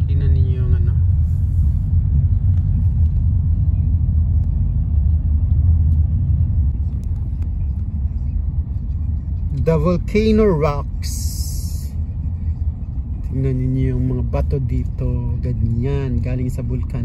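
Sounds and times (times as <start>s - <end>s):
vehicle rumble from inside cabin: 0.0s - 17.0s.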